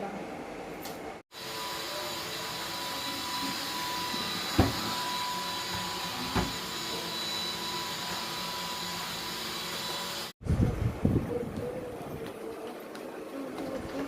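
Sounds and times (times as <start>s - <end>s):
vacuum cleaner whining: 1.3s - 10.4s.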